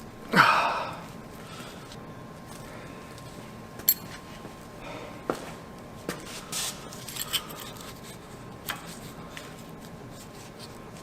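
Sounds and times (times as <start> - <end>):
metal clicks and clinks: 3.9 - 4.1.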